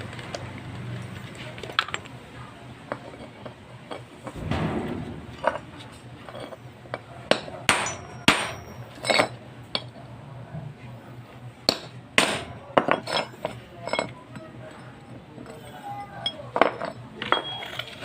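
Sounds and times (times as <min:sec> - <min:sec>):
metallic knocks and clinks: 0:04.4 - 0:06.6, 0:07.3 - 0:09.3.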